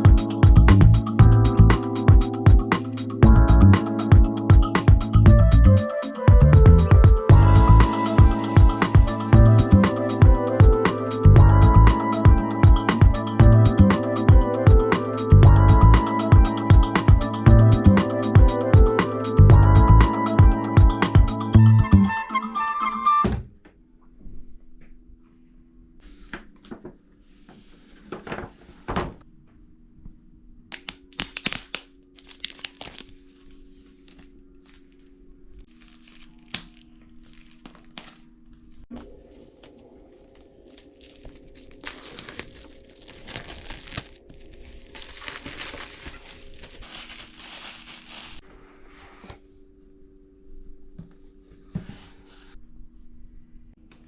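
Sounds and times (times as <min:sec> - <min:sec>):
background music chords: 0:00.0 - 0:23.2
paper packaging rustling: 0:31.2 - 0:48.4.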